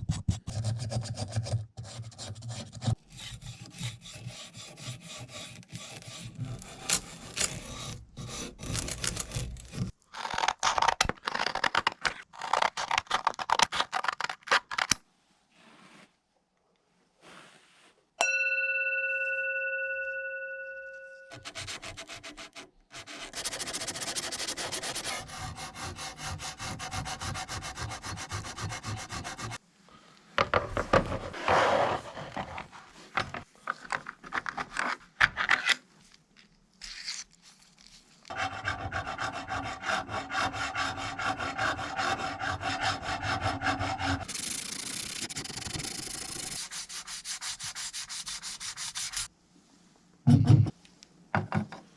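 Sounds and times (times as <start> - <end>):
ringing tone: 18.2 - 21.4
sandpaper rubbing on metal: 21.3 - 29.6, 38.3 - 49.3.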